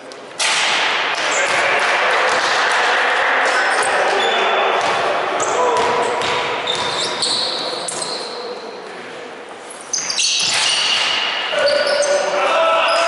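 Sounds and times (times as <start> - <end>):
crowd chatter: 0.0 - 10.5
basketball bouncing on court: 4.8 - 5.1, 5.7 - 7.4
short high squeaks: 6.7 - 8.4, 9.8 - 12.3.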